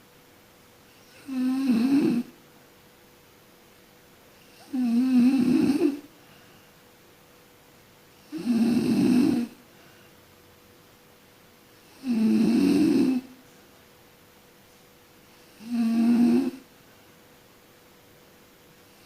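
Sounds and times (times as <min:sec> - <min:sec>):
person snoring: 0:01.0 - 0:02.3, 0:04.6 - 0:06.1, 0:08.2 - 0:09.6, 0:11.9 - 0:13.3, 0:15.5 - 0:16.6.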